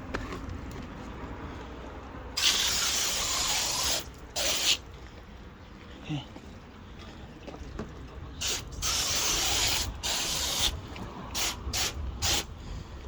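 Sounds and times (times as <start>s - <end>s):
water spray hissing: 2.4s - 4.8s, 8.4s - 12.5s.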